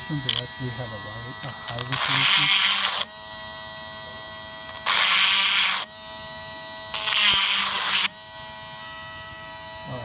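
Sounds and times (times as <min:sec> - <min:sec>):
rotary tool whining: 0:00.0 - 0:10.0.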